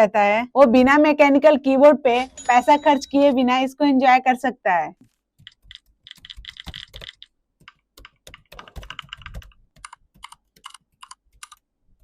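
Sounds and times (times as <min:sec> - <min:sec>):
mechanical keyboard typing clicks: 0:05.4 - 0:11.6.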